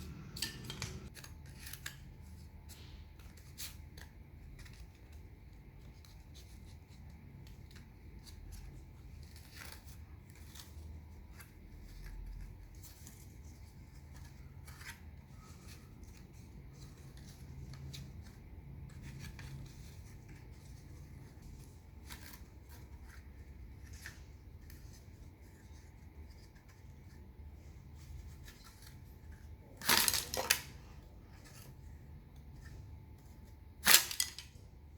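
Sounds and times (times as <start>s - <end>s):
sticks clattering: 0.0s - 1.1s, 29.8s - 30.8s, 33.8s - 34.6s
wooden sticks clicking: 0.0s - 1.1s, 33.8s - 34.5s
faint low hum: 0.0s - 33.8s.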